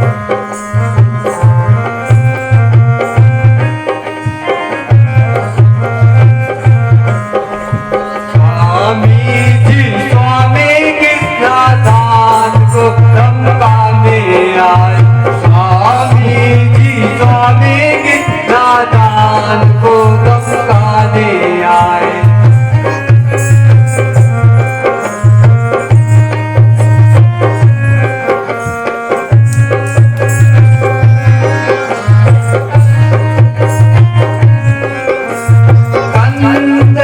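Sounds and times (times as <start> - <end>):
hand drumming: 0.0 - 37.0
wavering gliding melody: 21.9 - 36.8.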